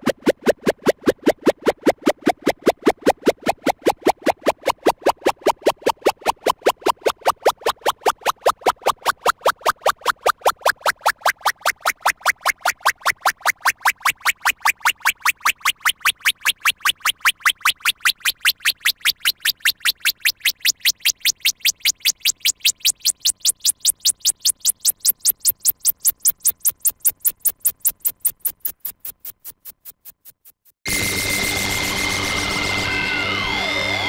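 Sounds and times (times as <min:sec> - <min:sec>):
synthesized pulses rising in pitch: 0:10.2 - 0:29.0, 0:30.9 - 0:34.0.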